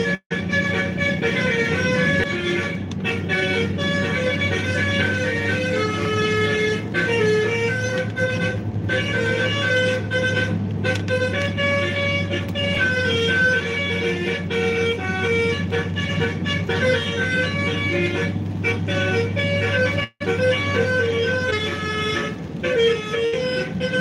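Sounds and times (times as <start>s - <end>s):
horn playing a tune: 0.0s - 24.0s.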